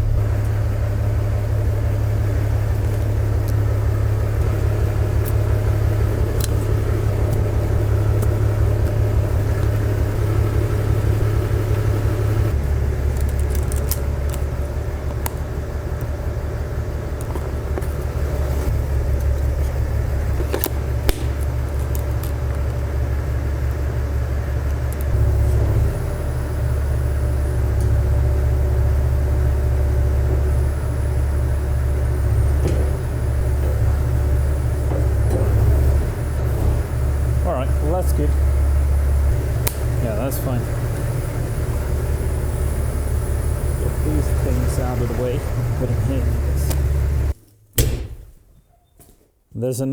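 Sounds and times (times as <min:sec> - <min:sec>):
tractor diesel engine running: 0:00.0 - 0:48.6
sharp clicks: 0:20.5 - 0:22.8.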